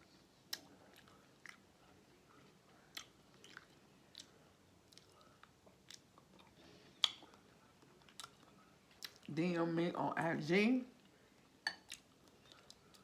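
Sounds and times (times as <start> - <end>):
wet chewing: 0.5 - 1.9, 2.7 - 9.3.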